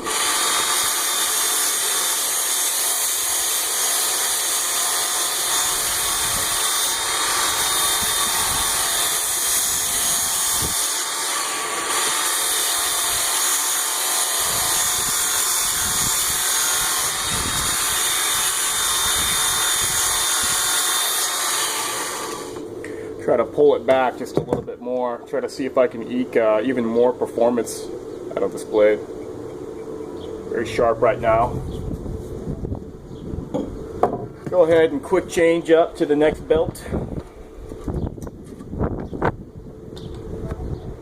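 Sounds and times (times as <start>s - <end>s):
belt sharpener motor whine: 0.0s - 22.9s
dull handling knocks: 24.3s - 24.7s, 33.5s - 34.6s.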